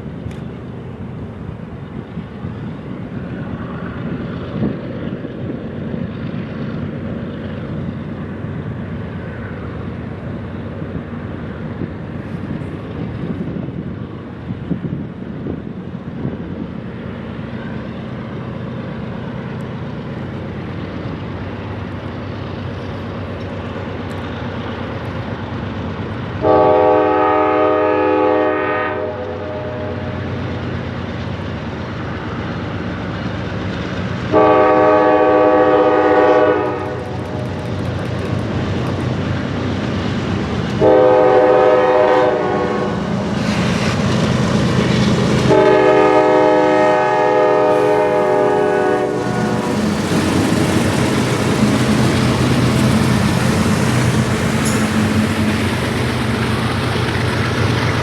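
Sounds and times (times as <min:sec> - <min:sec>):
locomotive engine rumble: 0:00.0 - 0:58.0
train air horn blasts: 0:26.4 - 0:30.1, 0:34.3 - 0:37.4, 0:40.8 - 0:43.1, 0:45.4 - 0:51.0.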